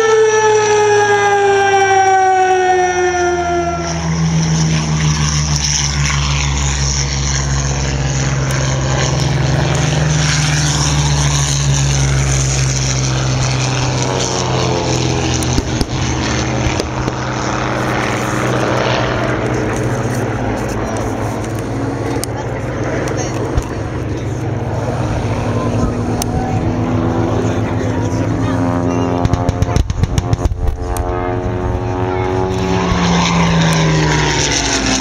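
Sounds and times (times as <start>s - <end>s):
air-raid siren winding down: 0.0s - 21.6s, 30.5s - 35.0s
propeller aircraft engines humming: 0.0s - 35.0s.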